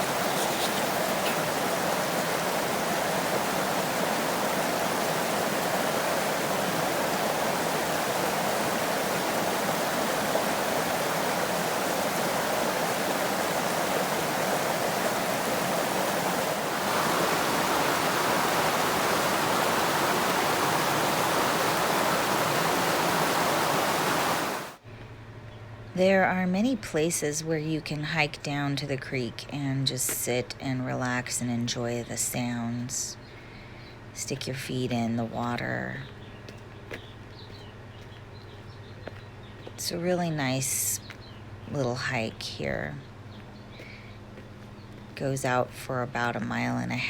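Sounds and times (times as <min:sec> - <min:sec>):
creek water flowing: 0:00.0 - 0:24.8.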